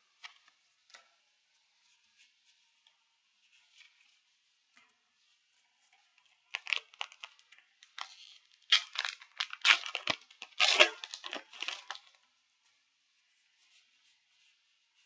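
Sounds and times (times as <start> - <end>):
foil wrapper crinkling and tearing: 6.4 - 12.3.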